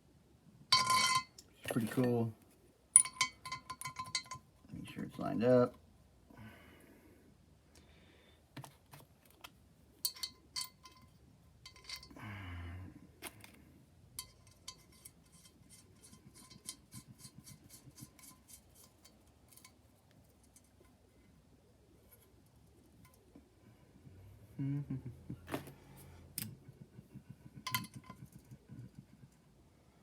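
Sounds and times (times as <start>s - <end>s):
metal washers and tools clinking: 0.7s - 2.3s, 2.9s - 4.6s, 10.0s - 12.2s, 13.2s - 21.0s, 27.6s - 29.0s.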